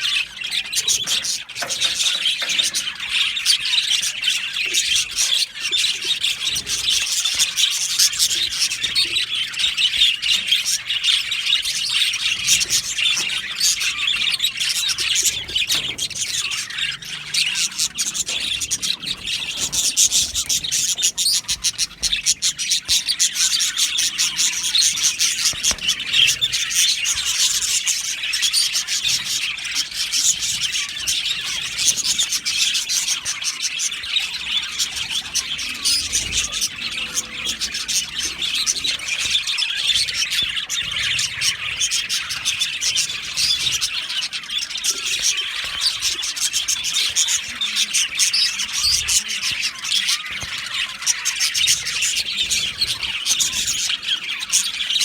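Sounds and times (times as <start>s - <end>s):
budgerigars chirping and warbling: 0.0s - 55.0s.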